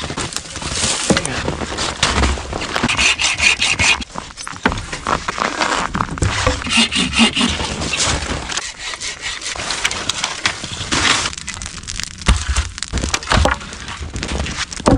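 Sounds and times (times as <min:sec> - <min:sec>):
wood splintering cracks: 0:00.0 - 0:14.9
saw rasping through wood: 0:02.8 - 0:04.0, 0:06.4 - 0:09.7.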